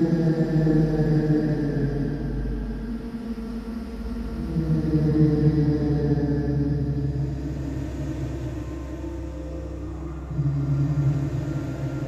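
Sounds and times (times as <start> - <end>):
low rumbling drone: 0.0 - 12.0.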